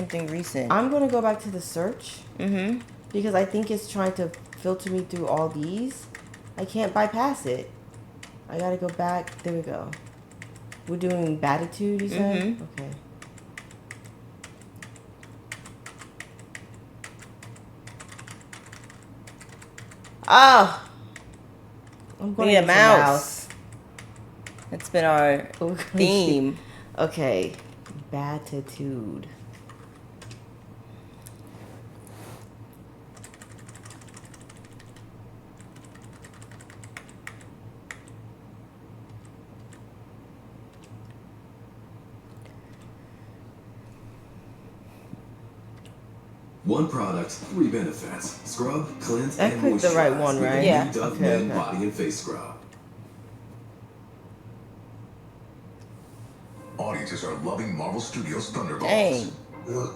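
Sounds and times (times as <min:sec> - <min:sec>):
typing on a laptop keyboard: 0:00.0 - 0:01.4, 0:02.8 - 0:06.7, 0:07.9 - 0:11.3, 0:12.8 - 0:20.2, 0:21.1 - 0:22.2, 0:23.5 - 0:25.8, 0:29.5 - 0:30.4, 0:33.1 - 0:38.2, 0:39.1 - 0:39.8
low steady hum: 0:00.0 - 0:59.9.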